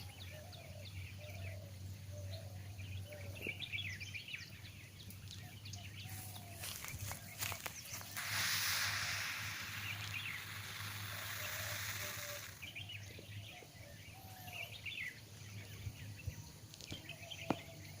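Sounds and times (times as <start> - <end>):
birds chirping: 0.0 - 18.0
snake rasping hiss: 6.1 - 13.2.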